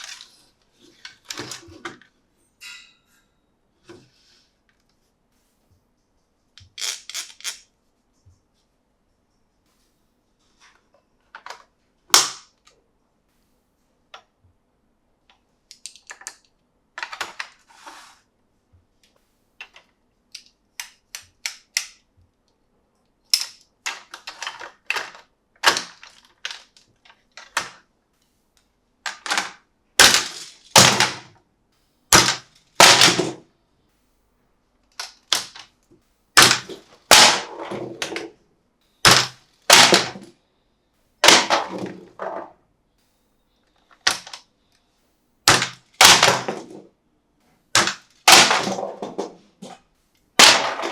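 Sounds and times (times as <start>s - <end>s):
plastic toy clicks and knocks: 23.3s - 27.8s, 29.1s - 31.3s, 39.0s - 40.3s.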